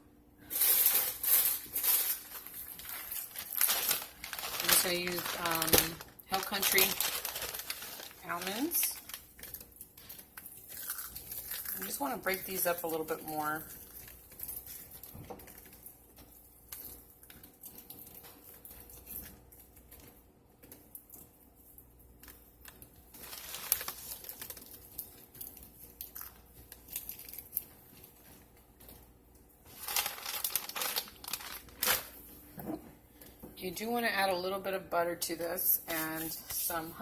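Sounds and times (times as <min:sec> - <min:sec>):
almonds crackling being broken: 0:00.8 - 0:14.8, 0:29.7 - 0:32.2.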